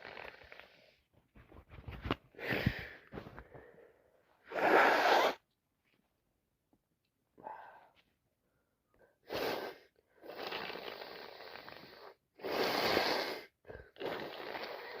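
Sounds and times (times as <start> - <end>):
woman breathing through congested nose: 2.4 - 5.4.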